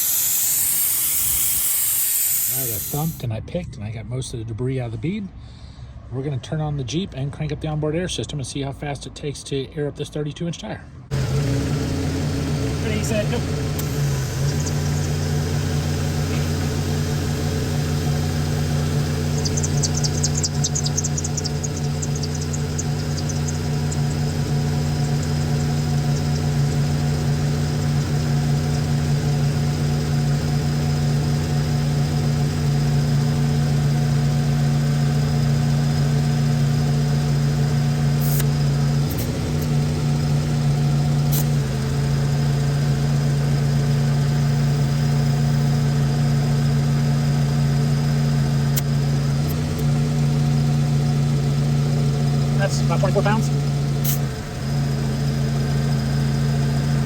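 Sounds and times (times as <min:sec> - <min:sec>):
air compressor pumping air: 0:00.0 - 0:03.2, 0:11.1 - 0:34.2, 0:38.0 - 0:41.8, 0:52.6 - 0:54.4
car engine idling: 0:00.0 - 0:03.3, 0:11.1 - 0:57.0.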